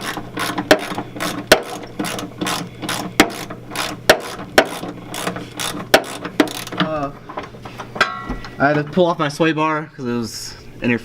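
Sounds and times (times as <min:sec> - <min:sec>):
ratchet wrench clicking: 0:00.0 - 0:06.8.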